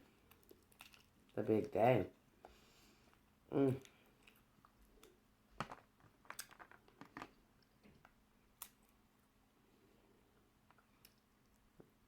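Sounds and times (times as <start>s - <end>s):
crab shell cracking: 0.3s - 1.2s.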